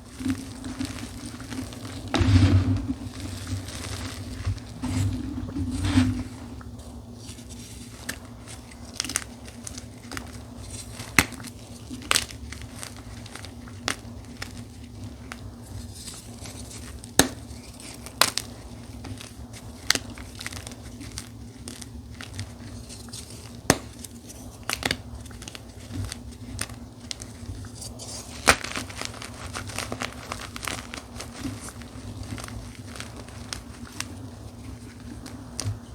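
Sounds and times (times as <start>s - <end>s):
chalk crunching and crumbling: 0.0s - 35.9s
low hum: 1.5s - 7.1s.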